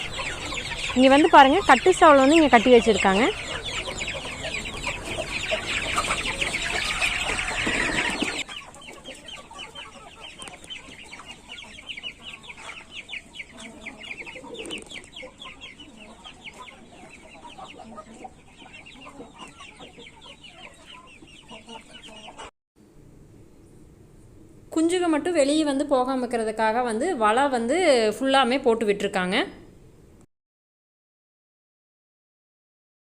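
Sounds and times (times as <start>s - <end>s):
chickens clucking: 0.0s - 22.5s
chicks peeping: 0.0s - 22.5s.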